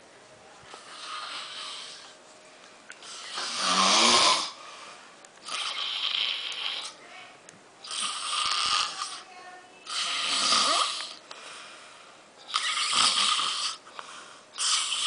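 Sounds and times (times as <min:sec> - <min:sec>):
man snoring: 0:03.1 - 0:04.6, 0:05.5 - 0:07.0, 0:09.9 - 0:11.2, 0:12.5 - 0:13.8, 0:14.6 - 0:15.0.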